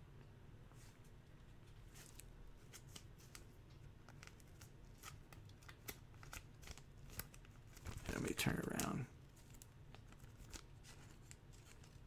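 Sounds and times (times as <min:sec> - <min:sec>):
trading cards clicking and rustling: 0:05.6 - 0:09.0.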